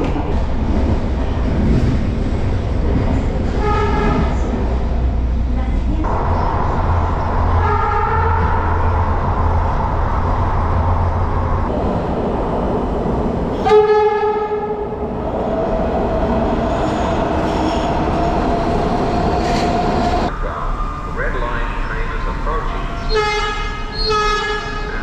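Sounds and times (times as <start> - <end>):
train running noise: 0.0 - 25.0
train horn blast: 3.6 - 4.4, 7.6 - 8.9, 13.6 - 15.0, 23.0 - 25.0.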